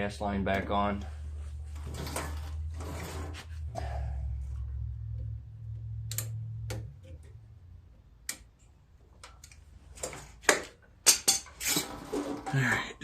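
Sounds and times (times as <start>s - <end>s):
low hum: 1.0s - 8.8s.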